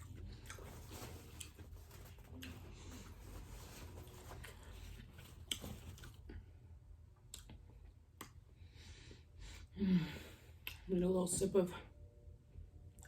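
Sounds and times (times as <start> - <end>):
close-up chewing: 0.0 - 6.5.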